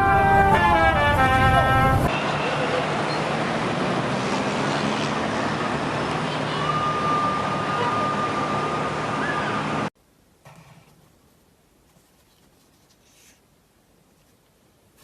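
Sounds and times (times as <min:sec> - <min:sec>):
road traffic noise: 0:00.0 - 0:09.9.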